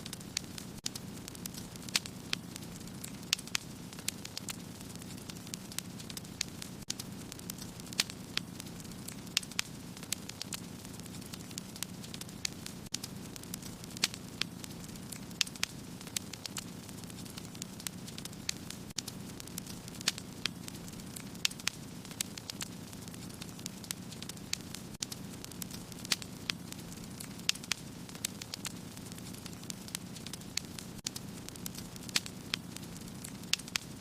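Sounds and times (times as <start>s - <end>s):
fire burning in a fireplace: 0.0s - 34.0s.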